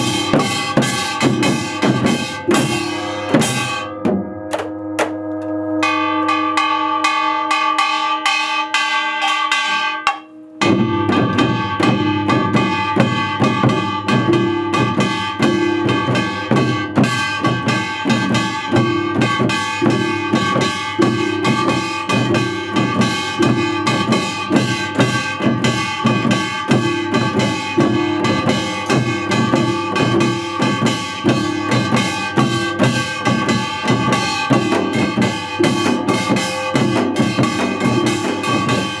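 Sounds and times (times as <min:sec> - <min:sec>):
drum kit beat: 0:00.0 - 0:39.0
sustained instrument tones: 0:00.0 - 0:39.0.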